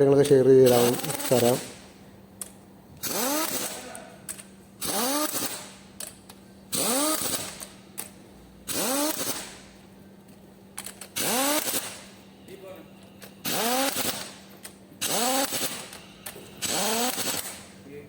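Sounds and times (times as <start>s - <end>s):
faint steady hum: 7.5s - 15.0s
power tool motor whine: 11.2s - 12.0s, 13.4s - 14.4s, 15.0s - 15.9s, 16.6s - 17.7s.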